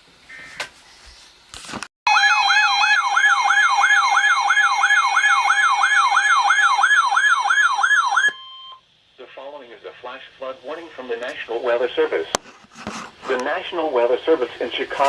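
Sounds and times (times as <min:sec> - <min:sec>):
warbling siren alarm: 0:02.1 - 0:08.8.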